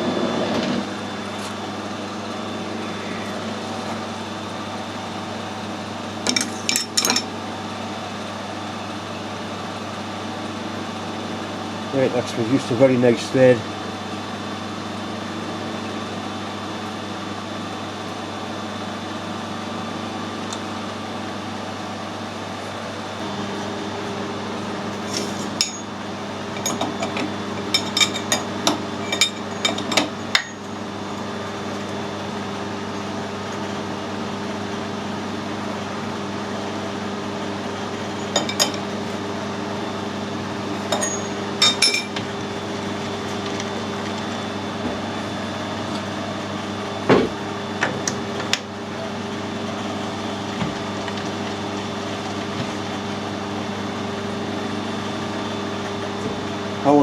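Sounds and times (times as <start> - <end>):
metal tools clinking: 40.9 - 42.1.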